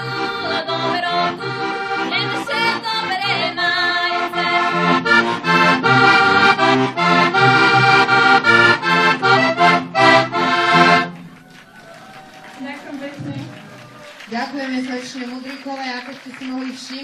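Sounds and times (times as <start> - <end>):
button accordion folk tune: 0.0 - 11.4.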